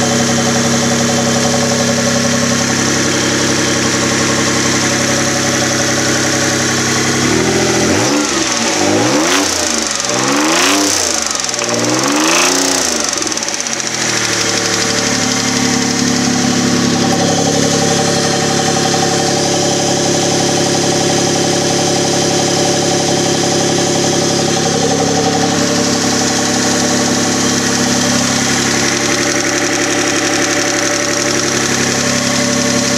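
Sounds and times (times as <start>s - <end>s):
engine idling and revving: 0.0s - 32.9s.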